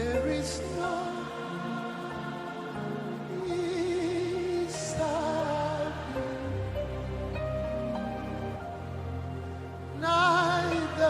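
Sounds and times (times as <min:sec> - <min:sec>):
person singing with vibrato: 0:00.0 - 0:07.2, 0:09.8 - 0:11.0
keyboard chords: 0:00.0 - 0:11.0.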